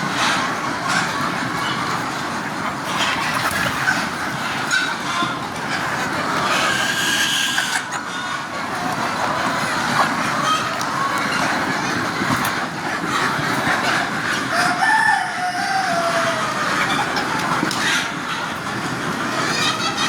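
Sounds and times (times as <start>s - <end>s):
chickens clucking: 0.0s - 20.0s
rooster crowing: 14.5s - 16.6s.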